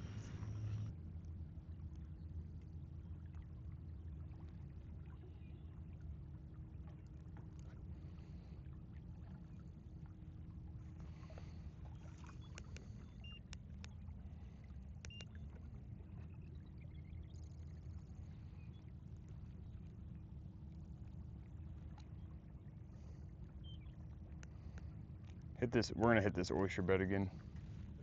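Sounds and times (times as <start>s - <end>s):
boat engine rumble: 0.0s - 28.0s
faint steady hum: 0.0s - 28.0s
light clicks: 12.4s - 14.0s, 14.9s - 15.4s.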